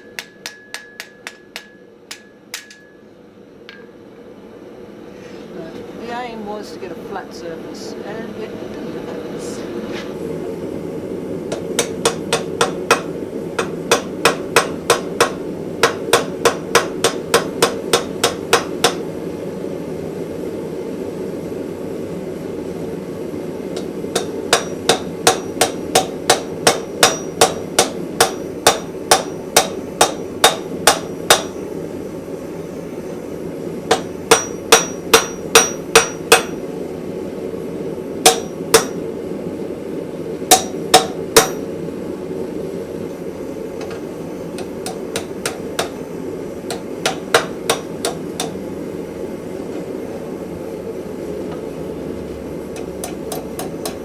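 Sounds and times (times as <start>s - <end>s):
hammer striking steel on anvil: 0.0s - 3.1s, 3.7s - 4.0s, 11.5s - 19.1s, 23.8s - 31.6s, 33.9s - 36.6s, 38.2s - 39.0s, 40.5s - 41.7s, 44.6s - 46.0s, 46.7s - 48.6s, 53.0s - 54.0s.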